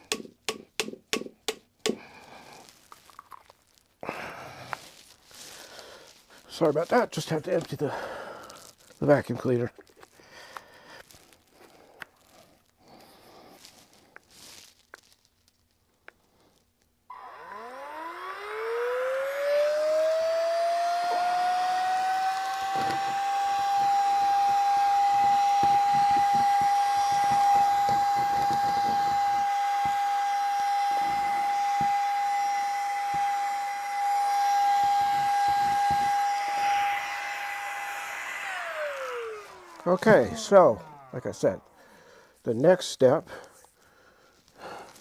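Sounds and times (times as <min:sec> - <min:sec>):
handheld vacuum motor whine: 0:17.1 - 0:42.2.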